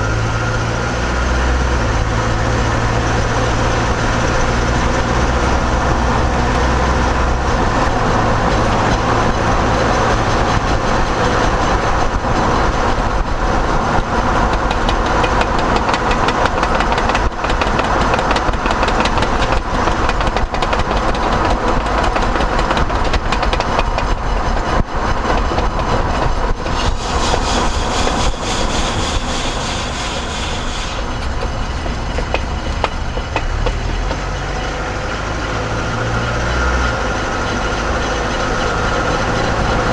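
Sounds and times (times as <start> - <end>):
road noise: 0.0 - 39.9
tire knocking: 7.4 - 35.0.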